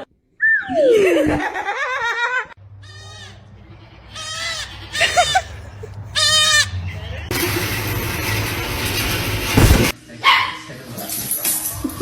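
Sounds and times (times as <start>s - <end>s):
short quavering animal calls: 2.8s - 3.4s, 4.1s - 6.8s.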